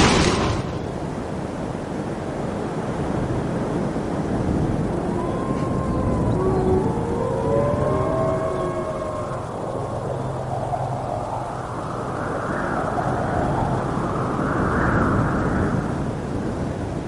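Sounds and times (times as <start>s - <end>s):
strong gusty wind: 0.0s - 17.0s
faint wavering howling tones: 3.7s - 16.2s.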